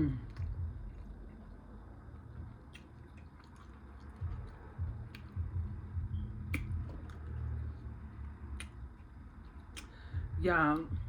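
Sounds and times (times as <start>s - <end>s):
person chewing food: 0.1s - 10.2s
wet mouth smacks and clicks: 2.6s - 5.6s, 6.4s - 7.4s, 8.5s - 10.1s.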